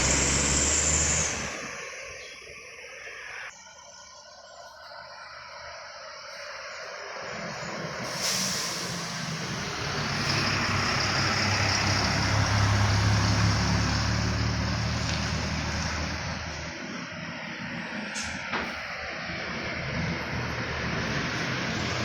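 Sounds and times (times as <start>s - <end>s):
diesel vehicle passing: 0.0s - 2.3s, 5.1s - 22.0s.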